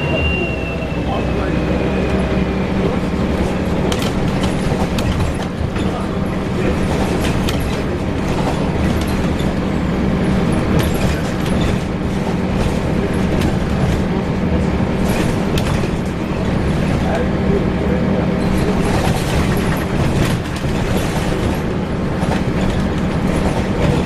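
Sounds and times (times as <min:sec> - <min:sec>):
bus body rattling: 0:00.0 - 0:24.0
bus engine hum: 0:00.0 - 0:24.0.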